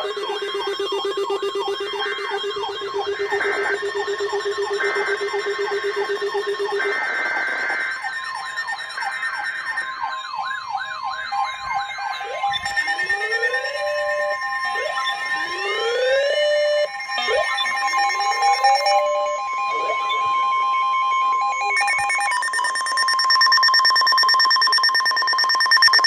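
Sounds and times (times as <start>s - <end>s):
rapid buzzing data bursts: 0.0s - 9.9s, 21.8s - 26.0s
rising siren-like sweeps: 0.0s - 22.4s
high alarm tone: 0.0s - 26.0s.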